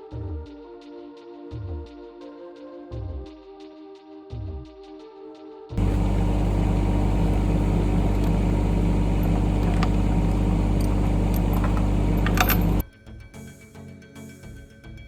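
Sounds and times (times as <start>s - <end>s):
diesel engine running: 5.8s - 12.8s
sharp metallic clicks: 5.8s - 12.8s.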